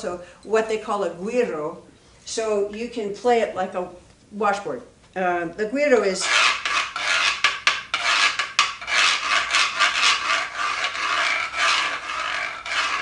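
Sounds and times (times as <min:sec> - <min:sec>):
guiro scraping: 0:06.1 - 0:13.0.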